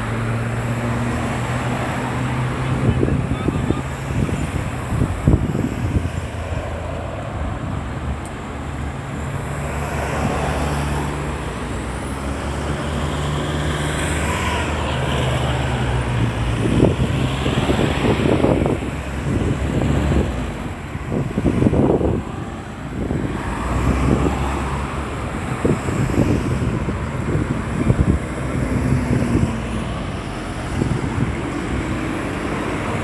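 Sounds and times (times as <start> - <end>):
engine running steadily: 0.0 - 33.0
road traffic: 0.0 - 33.0
vehicles passing: 0.0 - 33.0.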